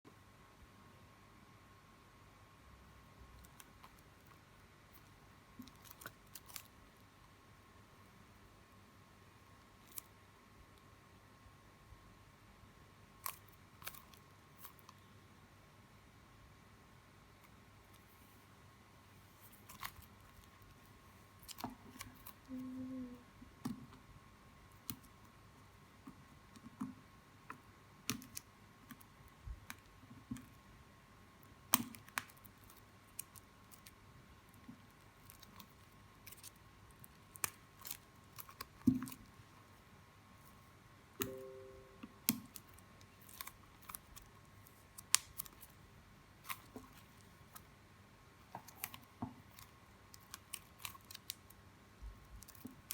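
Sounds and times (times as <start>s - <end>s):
packaging clicks and crinkles: 48.6s - 51.5s.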